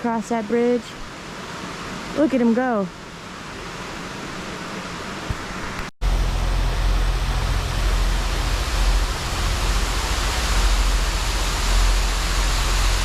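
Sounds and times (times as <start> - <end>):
rushing noise with low rumble: 3.0 - 13.0.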